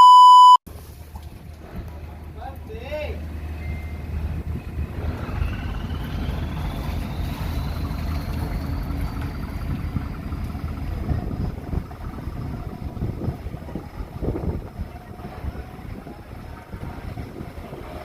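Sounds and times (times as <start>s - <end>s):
boat engine rumbling: 0.7s - 18.0s
wind buffeting microphone: 4.3s - 18.0s.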